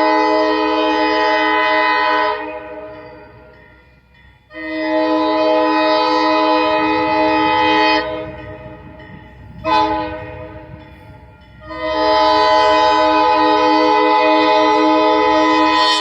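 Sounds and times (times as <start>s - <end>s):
locomotive air horn blasts: 0.0s - 3.3s, 4.5s - 8.3s, 9.6s - 10.8s, 11.6s - 16.0s.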